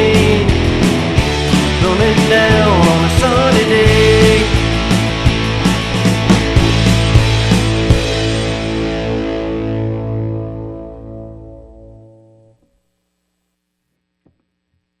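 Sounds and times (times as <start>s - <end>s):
distorted guitar chord ringing: 4.6s - 12.6s.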